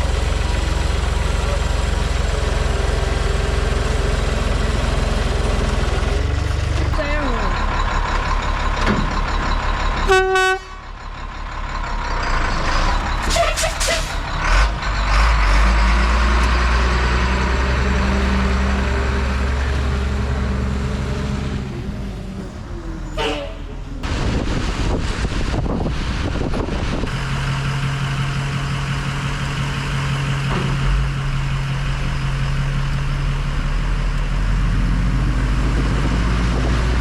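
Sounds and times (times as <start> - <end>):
truck engine running: 0.0 - 37.0
horn toot: 10.1 - 10.8.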